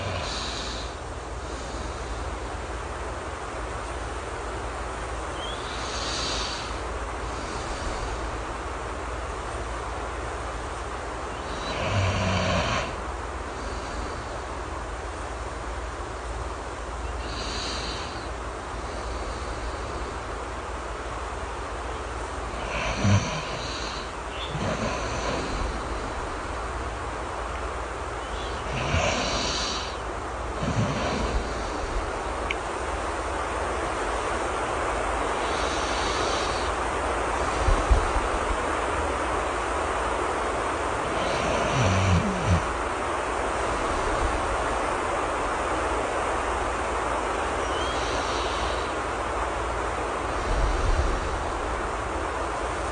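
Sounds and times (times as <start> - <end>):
person snoring: 0.0 - 1.0, 5.7 - 6.8, 11.4 - 13.0, 17.2 - 18.3, 22.5 - 26.0, 28.5 - 31.9, 41.0 - 42.8
person breathing softly: 0.0 - 2.8, 5.6 - 8.6, 12.8 - 14.8, 16.8 - 21.2, 22.5 - 26.8, 28.3 - 32.6, 33.8 - 38.6, 40.8 - 42.8, 46.7 - 52.9
steady rain: 0.0 - 52.9.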